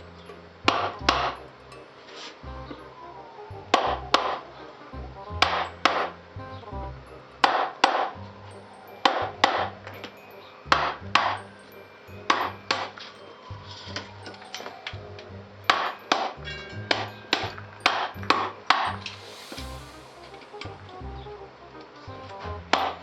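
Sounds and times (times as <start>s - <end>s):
background music: 0.0s - 23.0s
blows on wood block against wheel: 17.5s - 21.2s.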